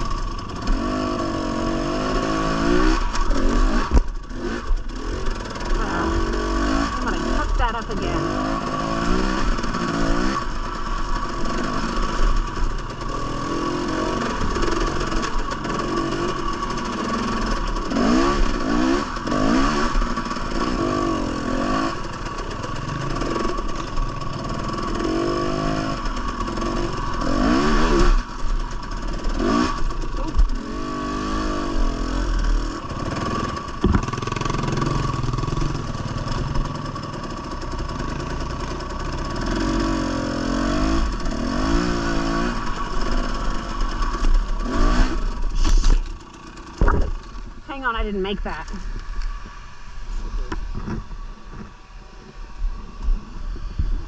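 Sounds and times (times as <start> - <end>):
dirt bike engine revving: 0.0 - 51.7
sharp knocks: 33.8 - 34.2.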